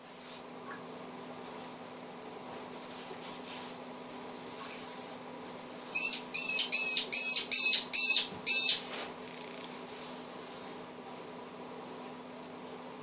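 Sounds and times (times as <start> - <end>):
bird harsh high calls: 5.9 - 8.9.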